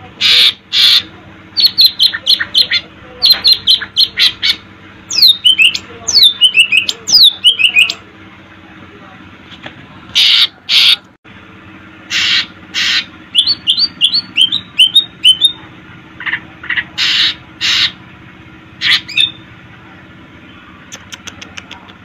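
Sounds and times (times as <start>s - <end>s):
bird harsh scratchy calls: 0.2s - 8.0s, 10.1s - 11.1s, 12.1s - 15.5s, 16.2s - 18.0s, 18.8s - 19.4s.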